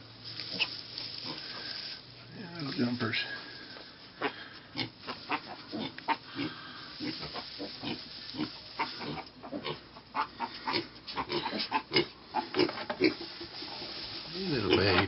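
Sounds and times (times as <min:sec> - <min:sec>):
piglets grunting: 0:00.5 - 0:15.0.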